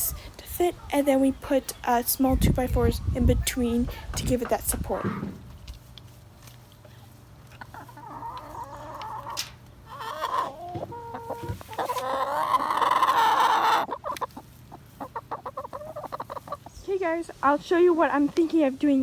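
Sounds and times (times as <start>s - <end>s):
hens clucking and squawking: 3.9s - 18.7s.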